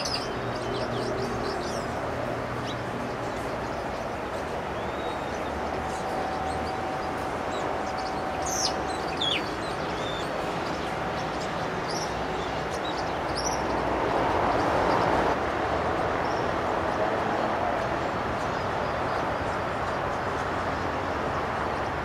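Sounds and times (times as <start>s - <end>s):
high falling bird chirps: 0.0s - 13.8s
steady noisy background: 0.0s - 22.0s.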